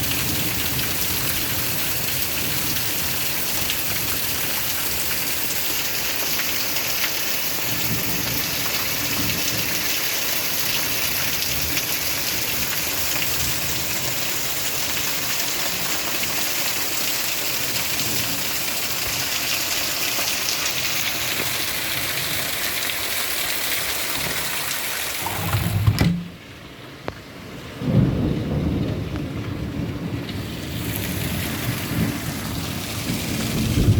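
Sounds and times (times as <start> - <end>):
heavy rain: 0.0 - 33.9
thunder rumbling: 27.8 - 33.9.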